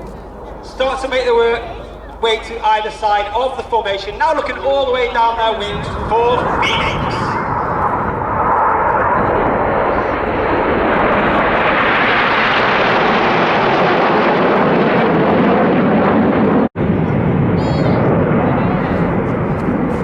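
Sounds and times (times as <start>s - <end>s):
jets flying overhead: 0.0s - 20.0s.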